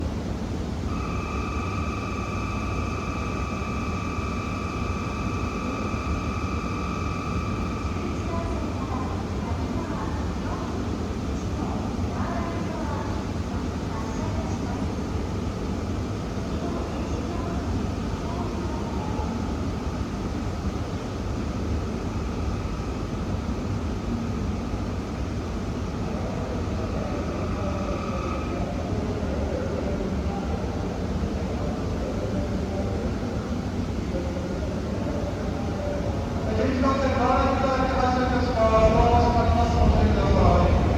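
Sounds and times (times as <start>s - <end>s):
train humming and rumbling: 0.0s - 40.9s
low rumble: 38.6s - 40.9s.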